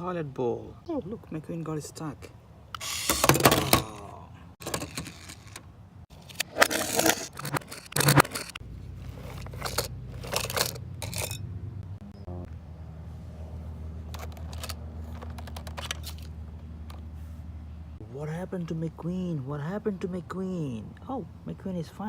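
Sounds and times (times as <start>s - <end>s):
plastic toys scraping and clicking: 2.8s - 4.0s, 4.6s - 11.4s, 14.1s - 17.0s.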